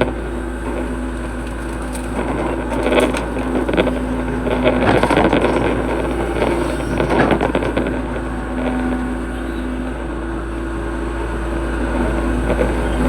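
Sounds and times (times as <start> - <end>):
excavator diesel engine running: 0.0 - 13.0
bucket crackling and scraping ground: 0.5 - 8.3.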